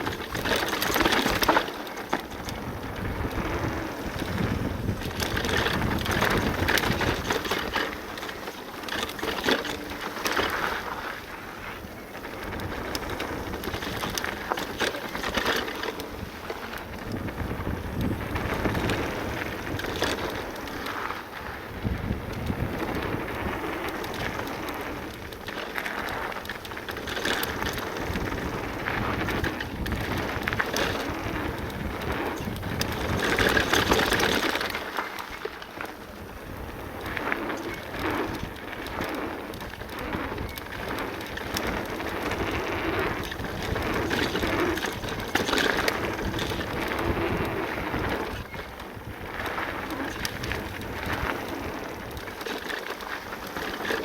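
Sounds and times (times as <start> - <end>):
bike tyres crunching over gravel: 0.0 - 54.0
wind rushing over microphone: 2.3 - 8.0, 16.2 - 25.3, 26.9 - 34.6, 36.2 - 52.4.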